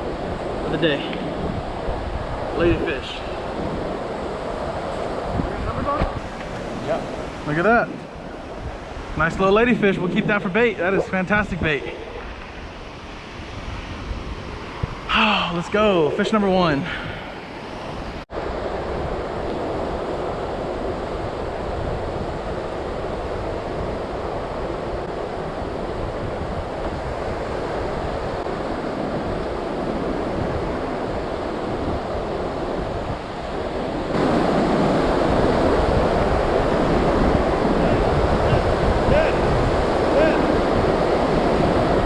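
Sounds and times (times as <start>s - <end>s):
surf washing onto beach: 0.0s - 42.0s
wind rumbling on microphone: 0.0s - 42.0s.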